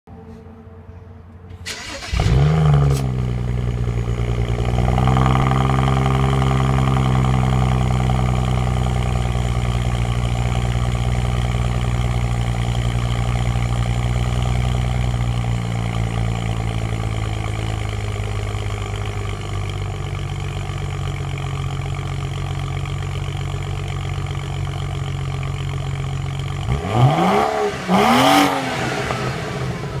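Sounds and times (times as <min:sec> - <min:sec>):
car engine cranking: 0:01.5 - 0:09.3
car engine idling: 0:01.6 - 0:30.0
car engine revving: 0:01.7 - 0:20.9, 0:25.7 - 0:30.0.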